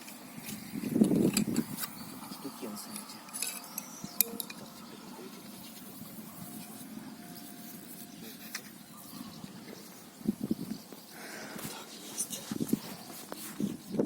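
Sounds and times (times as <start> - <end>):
faint steady background noise: 0.0 - 14.0
gear clicking and clinking: 2.8 - 4.8.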